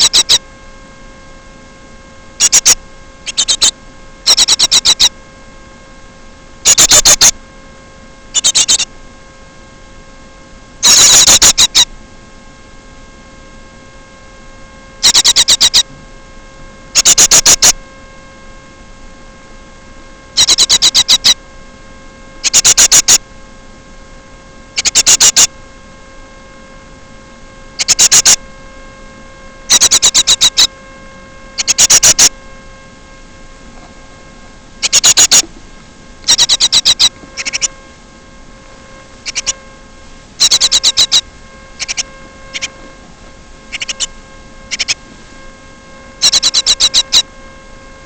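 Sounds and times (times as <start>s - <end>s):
bird rattling calls: 0.0s - 0.4s, 2.4s - 3.7s, 4.3s - 5.1s, 6.7s - 7.3s, 8.4s - 8.9s, 10.8s - 11.9s, 15.0s - 15.8s, 17.0s - 17.7s, 20.4s - 21.4s, 22.4s - 23.2s, 24.8s - 25.5s, 27.8s - 28.4s, 29.7s - 30.7s, 31.6s - 32.3s, 34.8s - 35.4s, 36.2s - 37.7s, 39.2s - 39.6s, 40.4s - 41.2s, 41.8s - 42.7s, 43.7s - 44.1s, 44.7s - 45.0s, 46.2s - 47.2s
steady electrical hum: 0.0s - 48.0s.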